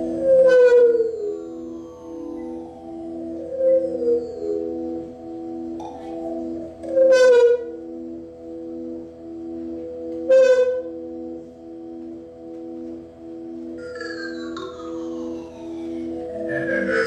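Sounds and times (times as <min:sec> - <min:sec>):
low pulsing drone tones: 0:00.0 - 0:17.0
loud bright horn-like tone: 0:07.1 - 0:07.8, 0:10.3 - 0:11.0.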